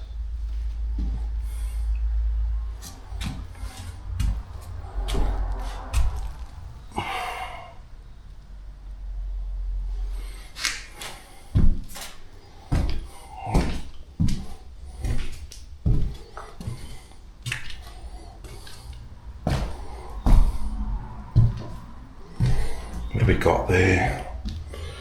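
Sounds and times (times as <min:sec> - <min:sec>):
scrapes and light knocks: 0:02.5 - 0:06.6
footsteps on hard floor: 0:02.8 - 0:06.6, 0:10.6 - 0:25.0.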